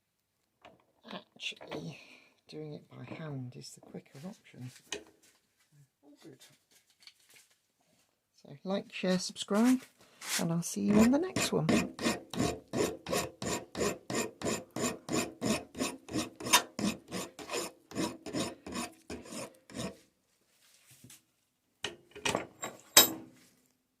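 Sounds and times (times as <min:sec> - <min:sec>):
hand file stroking metal bolt: 0:10.9 - 0:20.0.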